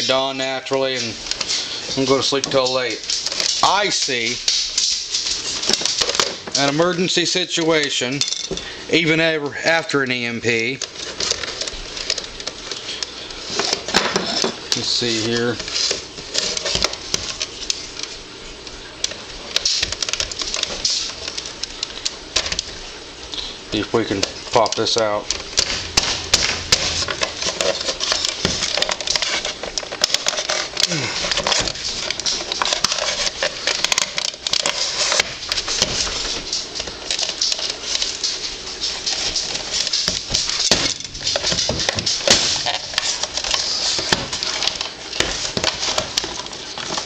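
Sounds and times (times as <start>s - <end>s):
plastic clicks and scrapes: 19.0s - 47.0s.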